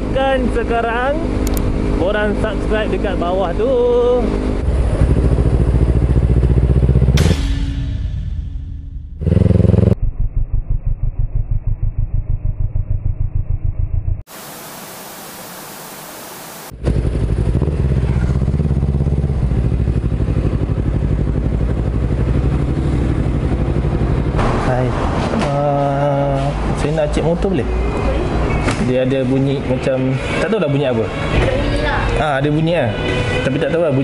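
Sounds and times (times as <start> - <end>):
motorcycle engine running: 0.0 - 14.3, 16.7 - 24.5
steady hiss: 14.3 - 16.7.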